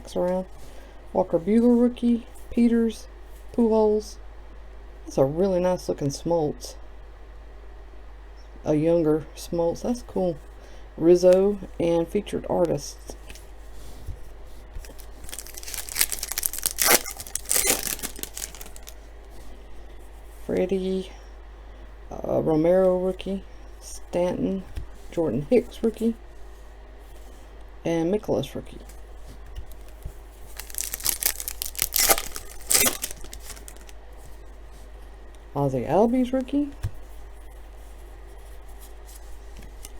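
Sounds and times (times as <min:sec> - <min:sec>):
wrapper tearing and crinkling: 0:14.8 - 0:19.1, 0:29.7 - 0:34.0.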